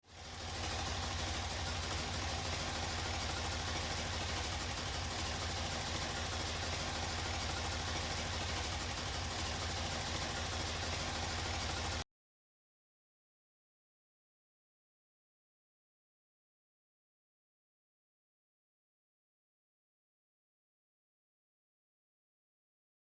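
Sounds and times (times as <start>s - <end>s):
motorcycle engine idling: 0.0s - 12.0s.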